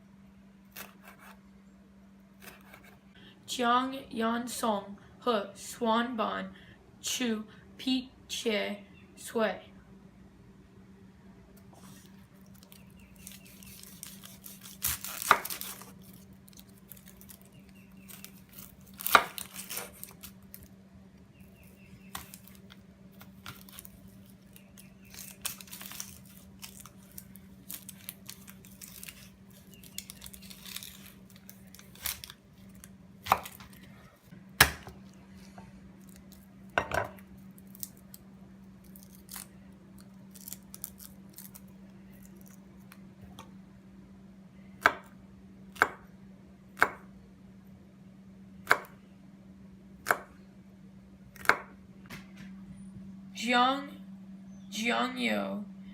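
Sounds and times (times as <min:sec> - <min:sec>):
steady low hum: 0:00.0 - 0:55.9
papery skins tearing: 0:11.8 - 0:20.8, 0:21.5 - 0:34.0, 0:37.3 - 0:38.2, 0:38.8 - 0:43.0.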